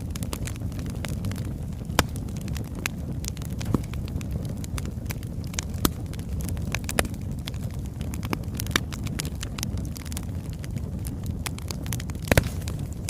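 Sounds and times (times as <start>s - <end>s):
burning logs crackling and popping: 0.0s - 13.0s
fire rumbling: 0.0s - 13.0s.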